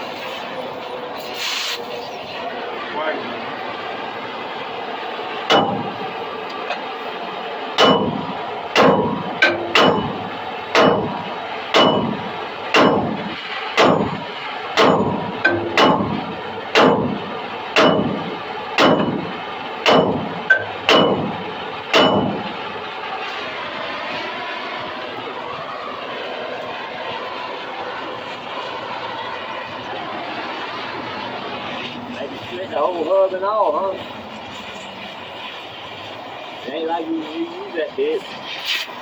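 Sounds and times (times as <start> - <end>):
hammer striking steel: 5.5 - 6.1, 7.8 - 22.5.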